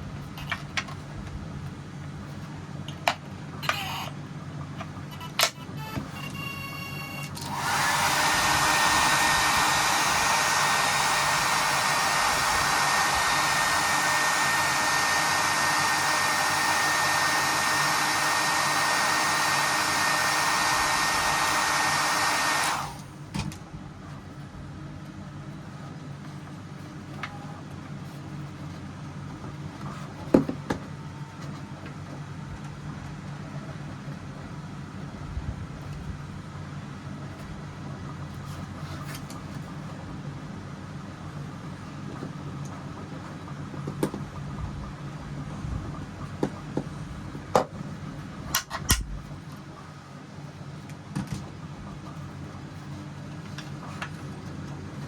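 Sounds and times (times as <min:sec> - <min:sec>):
faint hum: 0:00.0 - 0:07.6
hot-air blower running: 0:07.2 - 0:23.4.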